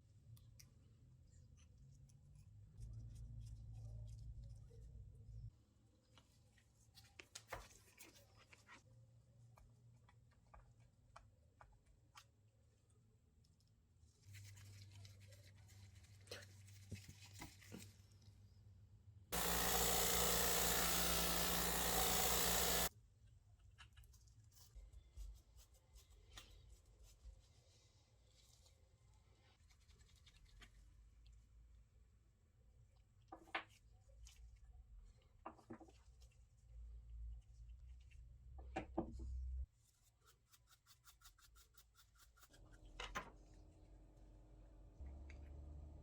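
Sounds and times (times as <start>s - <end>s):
motorised tool running: 19.4s - 22.9s.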